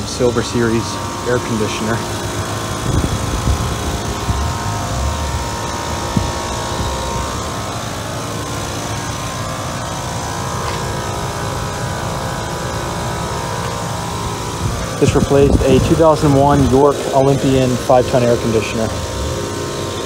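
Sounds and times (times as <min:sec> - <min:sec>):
air conditioner unit whirring: 0:00.0 - 0:20.0
steady tonal hum: 0:00.0 - 0:20.0
low bumps: 0:02.0 - 0:08.8.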